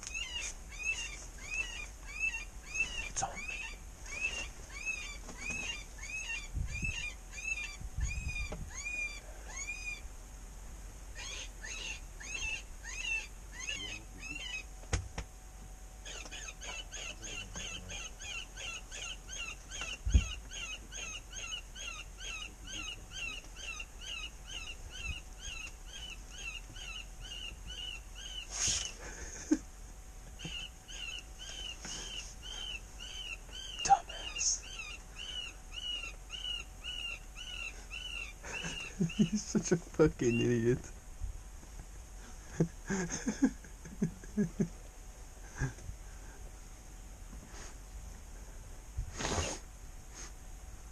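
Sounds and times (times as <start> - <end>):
predator call high cries: 0.1 - 10.0, 11.2 - 14.7, 16.0 - 28.9.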